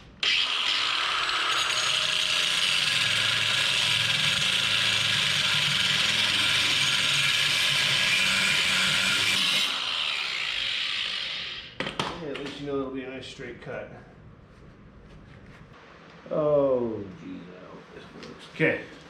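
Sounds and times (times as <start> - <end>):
power saw cutting metal: 0.2 - 11.8.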